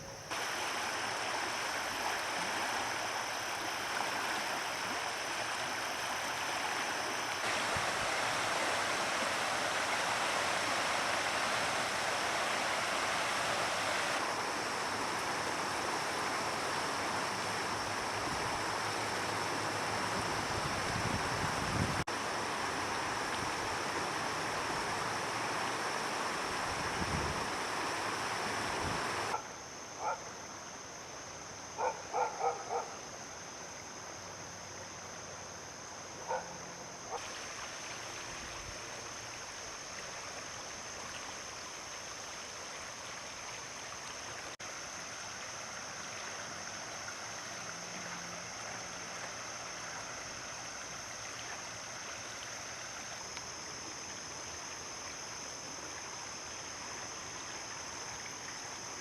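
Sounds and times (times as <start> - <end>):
floodwater rushing: 0.0 - 29.5, 37.1 - 59.0
dog barking: 29.3 - 30.3, 31.8 - 33.0, 36.2 - 37.2.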